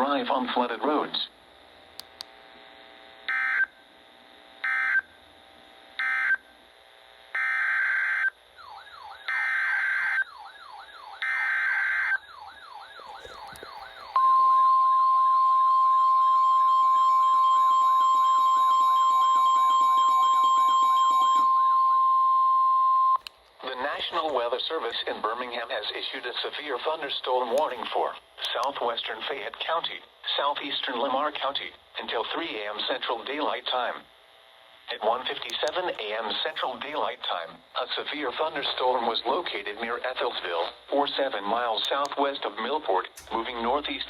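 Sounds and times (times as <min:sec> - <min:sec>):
steady warning tone: 0:07.3 - 0:25.7, 0:43.1 - 0:44.0.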